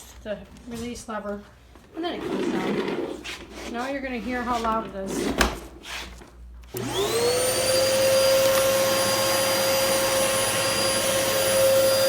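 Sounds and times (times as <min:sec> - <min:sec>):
vacuum cleaner motor whining: 0:06.7 - 0:12.0.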